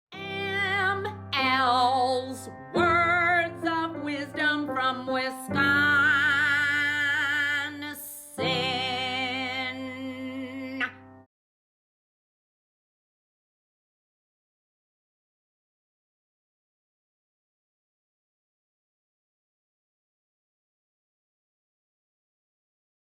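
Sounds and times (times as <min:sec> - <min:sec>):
woman singing with vibrato: 0:00.1 - 0:11.1.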